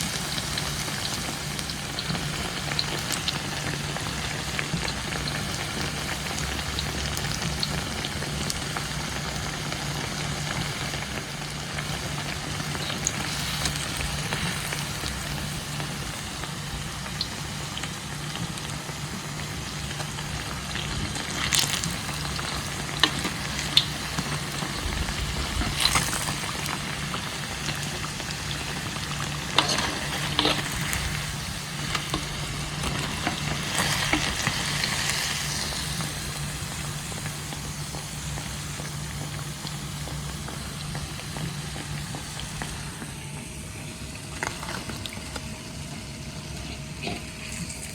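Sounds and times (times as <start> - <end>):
food deep-frying in hot oil: 0.0 - 47.9.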